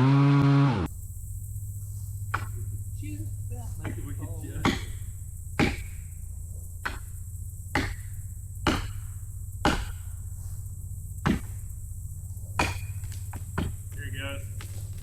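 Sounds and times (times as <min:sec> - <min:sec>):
steady low hum: 0:00.0 - 0:15.0
sharp knocks or chops: 0:02.4 - 0:02.6, 0:03.8 - 0:06.0, 0:06.8 - 0:10.1, 0:11.2 - 0:11.6, 0:12.6 - 0:15.0.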